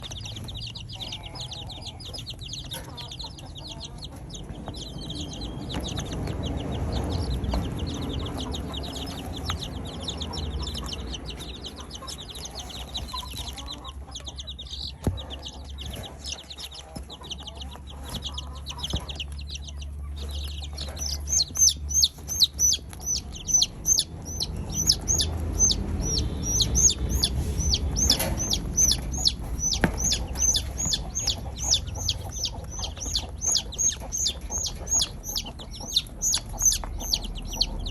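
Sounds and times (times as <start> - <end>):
chickens clucking and chirping: 0.0 - 37.9
low rumble: 4.3 - 13.5, 18.6 - 37.9.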